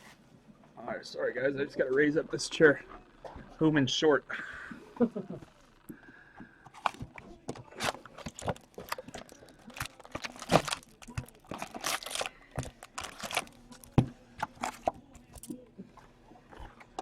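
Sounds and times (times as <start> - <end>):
plastic and foil wrappers crinkling: 6.7 - 15.6
packs being torn open: 6.8 - 15.5.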